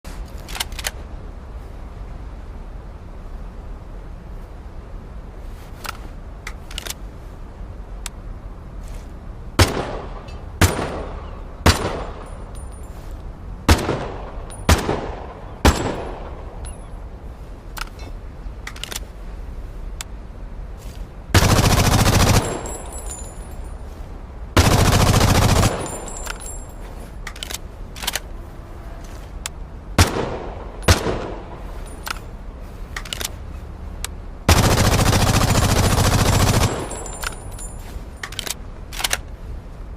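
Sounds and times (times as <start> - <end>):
rifle single shots: 9.6 - 12.2, 13.7 - 16.5, 30.0 - 31.6.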